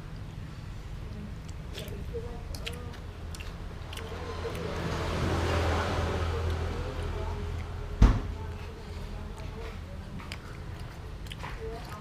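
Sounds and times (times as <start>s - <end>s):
steady low hum: 0.0s - 12.0s
vehicle passing: 1.7s - 10.9s.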